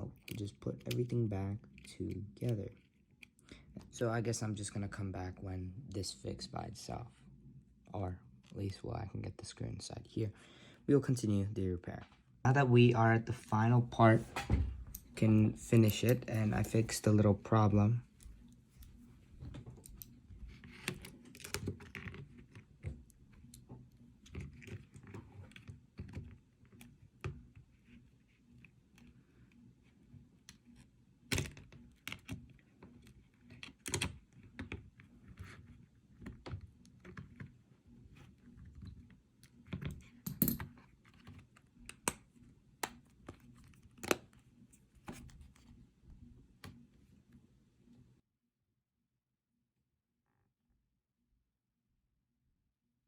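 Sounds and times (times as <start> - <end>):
low steady hum: 0.0 - 21.5.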